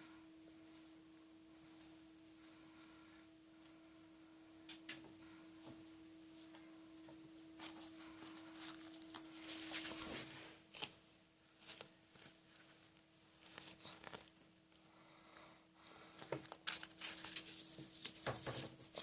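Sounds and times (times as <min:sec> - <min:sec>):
rustling: 0:06.3 - 0:14.9, 0:15.9 - 0:19.0.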